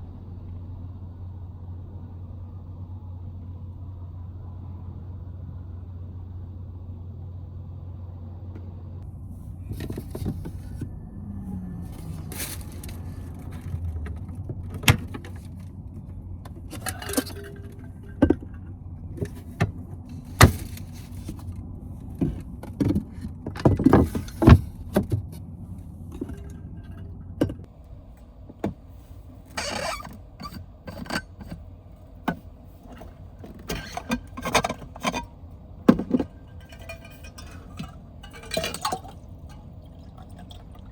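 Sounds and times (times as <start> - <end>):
car engine idling: 30.2 - 40.9
objects clicking and knocking: 32.3 - 40.6.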